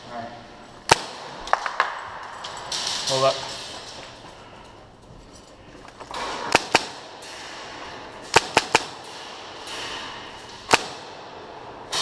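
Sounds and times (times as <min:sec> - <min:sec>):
airsoft gun shots: 0:00.9 - 0:02.0, 0:06.3 - 0:11.3.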